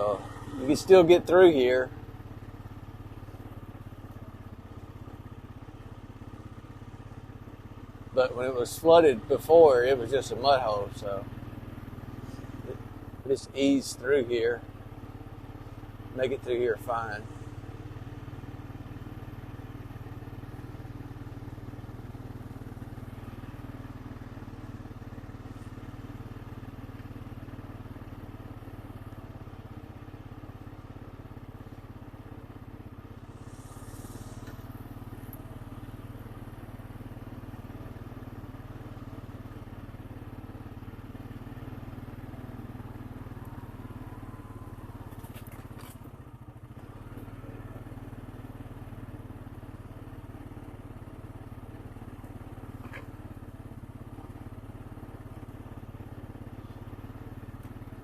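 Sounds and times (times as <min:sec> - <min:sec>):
atv engine running: 0:00.0 - 0:58.0
brief hiss: 0:33.3 - 0:34.8.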